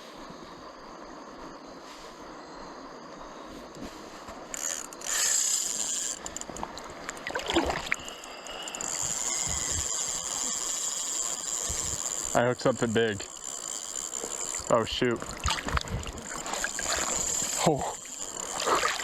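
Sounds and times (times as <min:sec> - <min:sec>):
fishing reel drag buzzing: 0:04.4 - 0:19.0
river water rushing: 0:14.2 - 0:19.0.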